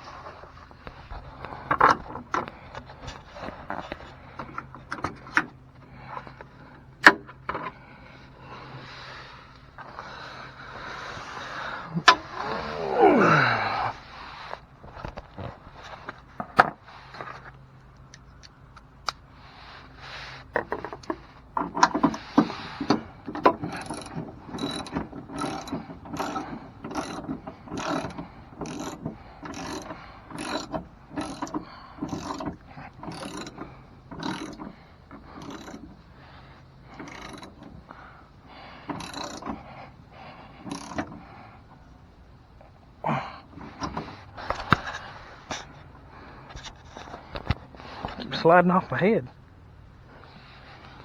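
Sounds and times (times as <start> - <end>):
ratchet wrench clicking: 23.4 - 35.9, 36.9 - 37.6, 38.9 - 39.6, 40.7 - 41.1.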